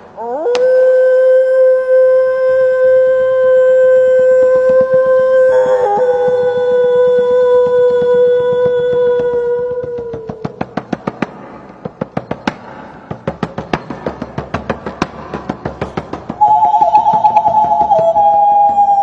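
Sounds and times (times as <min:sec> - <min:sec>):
sharp irregular knocks: 0:04.6 - 0:19.0
steady pitched tone: 0:16.4 - 0:19.0.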